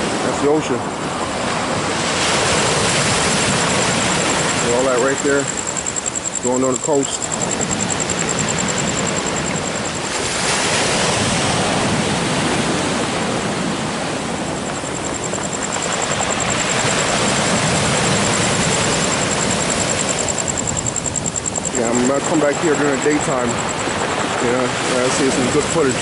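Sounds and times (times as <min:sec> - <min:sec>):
ocean surf washing ashore: 0:00.0 - 0:26.0
thin high pulsing tone: 0:03.1 - 0:11.3, 0:14.3 - 0:26.0.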